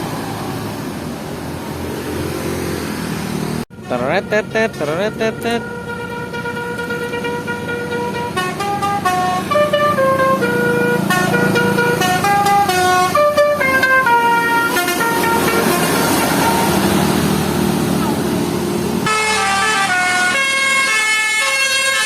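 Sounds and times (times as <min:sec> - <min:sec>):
bus engine rumble: 0:00.0 - 0:22.0
musical air horn playing a tune: 0:05.6 - 0:16.7, 0:19.1 - 0:22.0.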